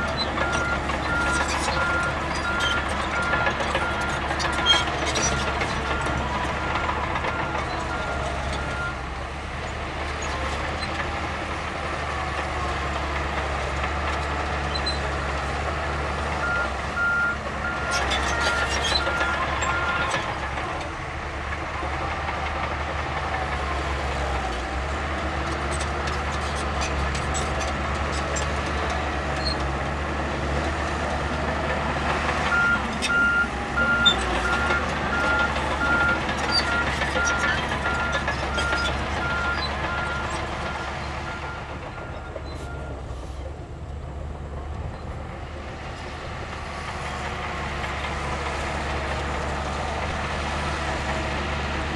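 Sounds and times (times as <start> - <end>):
reversing alarm beeping: 0.0 - 9.0, 16.4 - 20.1, 32.5 - 43.0
heavy machinery running: 0.0 - 51.9.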